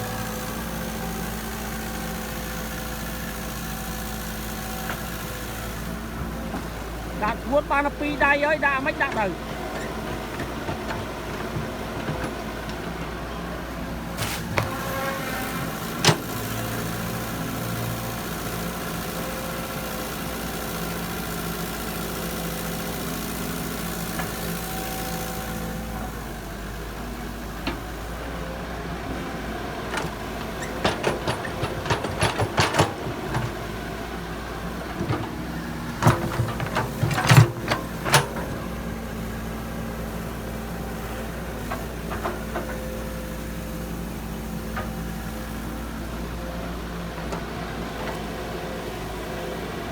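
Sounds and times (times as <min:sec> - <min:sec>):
diesel engine running: 0:00.0 - 0:49.9
sharp knocks and clatters: 0:30.0 - 0:33.6.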